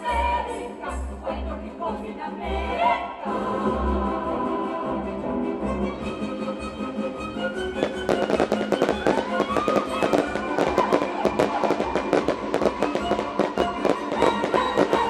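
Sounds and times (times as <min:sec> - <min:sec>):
music playing: 0:00.0 - 0:15.0
fireworks bangs and crackles: 0:07.8 - 0:15.0.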